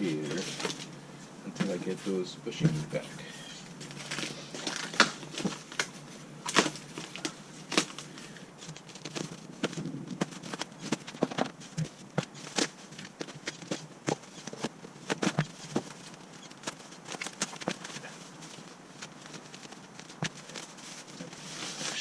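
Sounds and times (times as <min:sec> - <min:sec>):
packaging being handled: 0:01.5 - 0:22.0.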